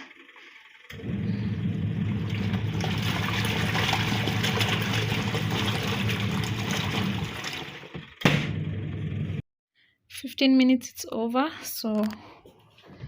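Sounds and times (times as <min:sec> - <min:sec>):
washing machine motor hum: 0:00.0 - 0:09.4
water churning and sloshing: 0:01.7 - 0:08.0.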